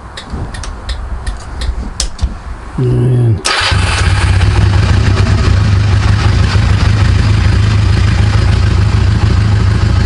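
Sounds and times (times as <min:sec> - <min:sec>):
motorcycle engine running: 0:03.5 - 0:10.0.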